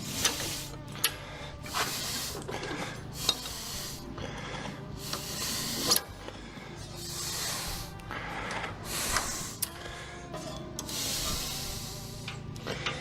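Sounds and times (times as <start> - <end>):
metal scraping and rubbing: 0.0 - 4.0
steady low hum: 0.0 - 13.0.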